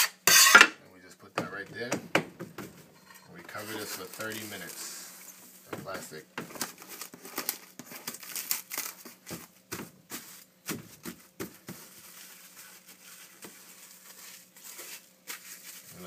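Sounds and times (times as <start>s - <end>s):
plastic wrap crinkling: 3.4s - 16.0s.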